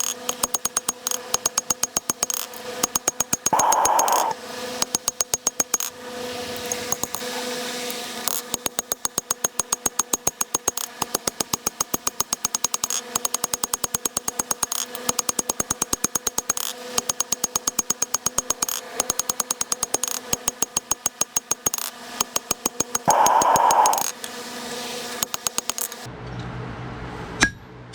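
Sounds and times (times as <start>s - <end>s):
steady hum: 3.5s - 4.4s, 23.1s - 24.1s
short hiss: 3.6s - 4.3s, 23.1s - 24.2s.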